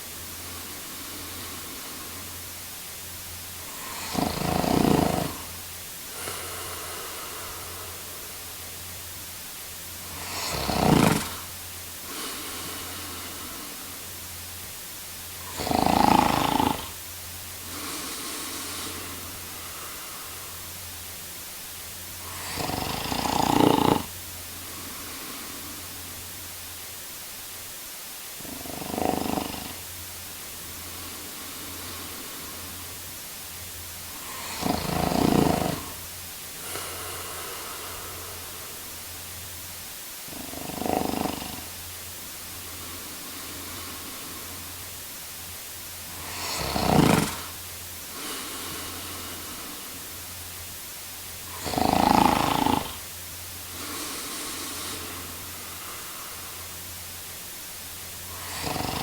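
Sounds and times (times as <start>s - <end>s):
man snoring: 0.0s - 2.5s, 3.6s - 8.8s, 10.0s - 14.2s, 15.4s - 20.7s, 22.2s - 26.2s, 28.4s - 29.9s, 30.7s - 33.0s, 34.1s - 39.0s, 40.3s - 41.8s, 42.5s - 44.9s, 46.0s - 50.2s, 51.4s - 56.8s, 58.2s - 59.0s
low hum and hiss: 0.0s - 59.0s.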